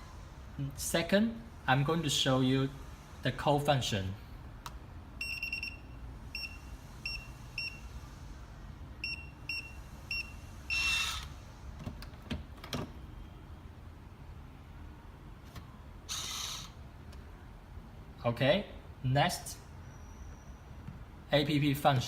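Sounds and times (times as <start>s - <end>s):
door lock keypad beeping: 5.2s - 7.8s.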